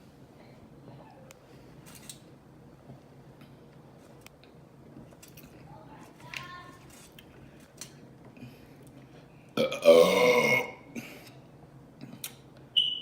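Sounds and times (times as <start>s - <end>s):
woman burping: 9.6s - 11.0s.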